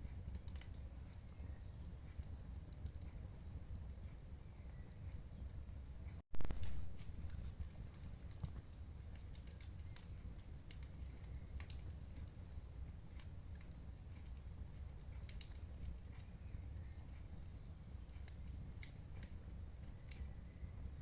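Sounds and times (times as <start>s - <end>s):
low rumble of flames: 0.0s - 21.0s
fire crackling and popping: 0.1s - 21.0s.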